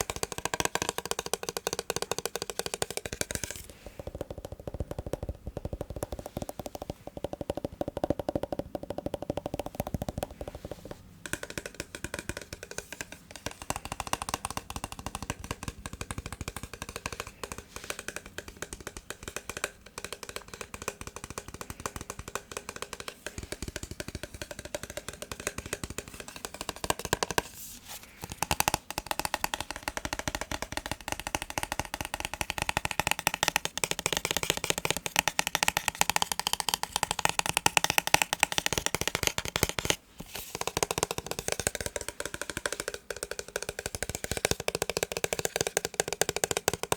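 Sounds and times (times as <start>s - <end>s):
massage gun rapid tapping: 0.0s - 46.9s.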